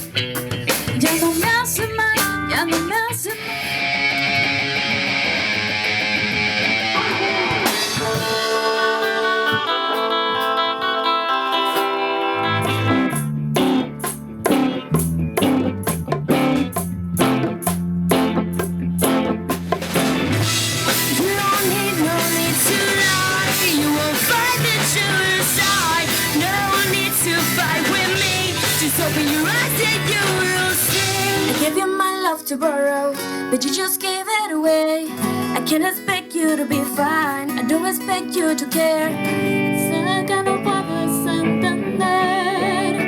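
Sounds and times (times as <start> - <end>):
band playing guitar and drums: 0.0 - 33.9.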